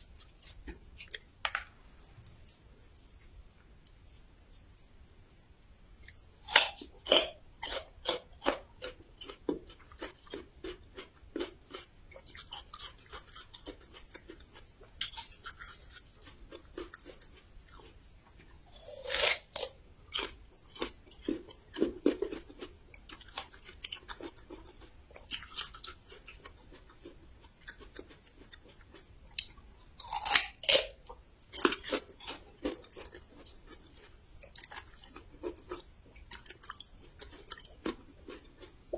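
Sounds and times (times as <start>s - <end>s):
crisp chewing: 0.0s - 5.4s, 6.0s - 38.9s
crunchy bites into ginger: 6.4s - 38.7s.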